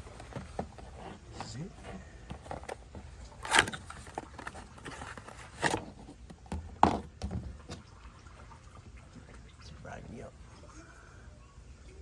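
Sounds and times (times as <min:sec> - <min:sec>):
capacitor handling knocks and rustles: 0:00.0 - 0:07.9.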